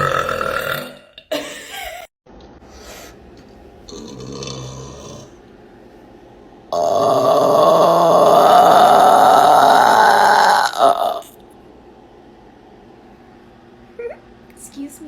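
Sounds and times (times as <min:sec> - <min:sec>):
women burping: 0:00.0 - 0:02.0, 0:06.8 - 0:11.3.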